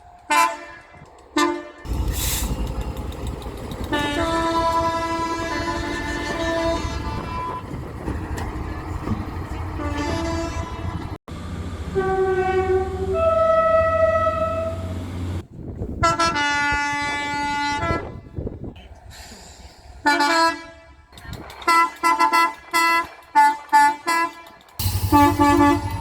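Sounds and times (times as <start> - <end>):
train rumbling: 0.0 - 19.1, 19.8 - 26.0
two-tone train horn blasts: 0.3 - 2.6, 3.8 - 7.8, 9.8 - 11.2, 11.8 - 15.0, 16.0 - 18.4, 20.0 - 21.1, 21.7 - 26.0.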